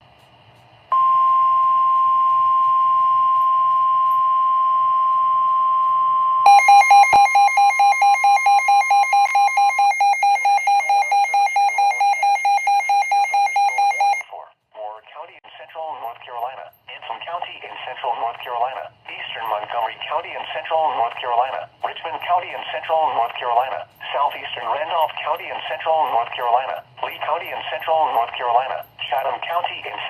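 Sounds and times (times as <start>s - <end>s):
steady alarm tone: 1.0s - 14.3s
rapid pulsing beeps: 6.5s - 14.3s.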